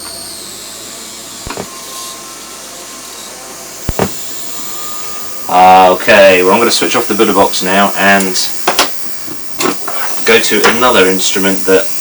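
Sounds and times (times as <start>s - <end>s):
harsh electronic hiss: 3.7s - 12.0s
sharp clicks: 3.8s - 4.6s.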